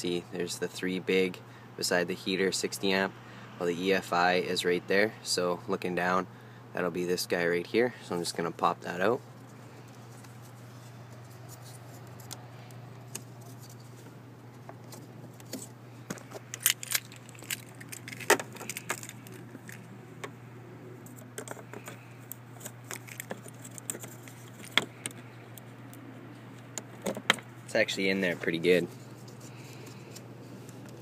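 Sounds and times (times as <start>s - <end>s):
steady low hum: 0.0s - 31.0s
sharp clicks and rattles of plastic: 14.9s - 19.8s, 21.2s - 25.2s.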